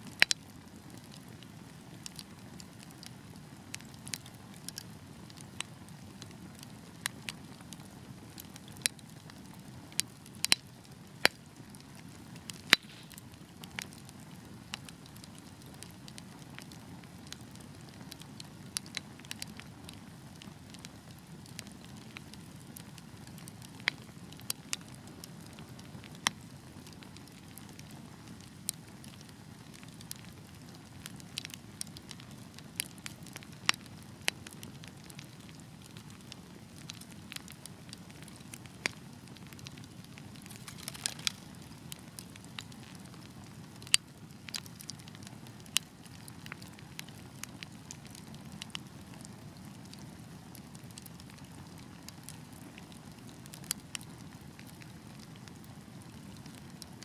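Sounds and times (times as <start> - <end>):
fire crackling and popping: 0.0 - 57.0
flames rushing in fireplace: 40.2 - 42.2.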